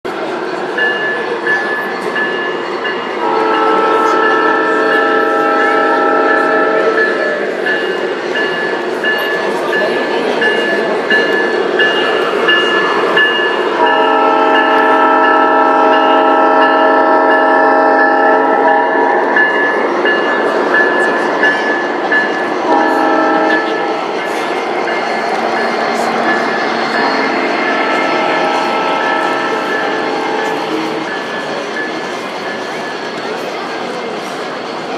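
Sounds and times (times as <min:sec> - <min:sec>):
steady hubbub: 0:00.1 - 0:34.9
multi-chime train horn: 0:00.9 - 0:07.9, 0:12.5 - 0:33.1.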